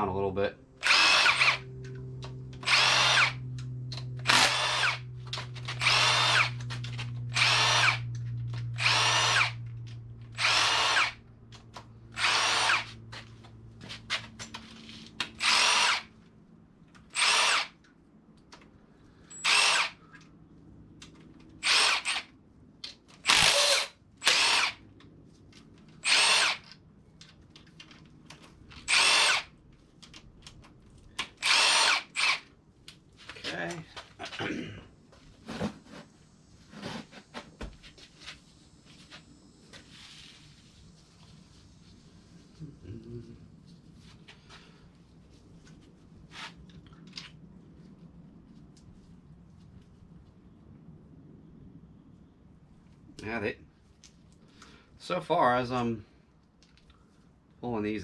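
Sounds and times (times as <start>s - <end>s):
cordless power tool spinning bolts: 0.8s - 1.9s, 2.6s - 9.7s, 10.3s - 11.2s, 12.1s - 12.9s, 15.3s - 16.1s, 17.1s - 17.8s, 19.3s - 20.0s, 21.6s - 22.3s, 23.2s - 24.8s, 26.0s - 26.7s, 28.8s - 29.5s, 31.2s - 32.5s.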